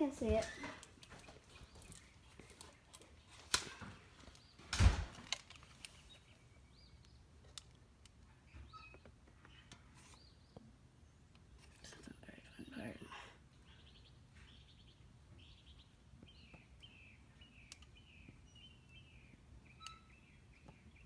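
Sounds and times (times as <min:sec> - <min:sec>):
faint bird chirps: 0:08.3 - 0:21.0.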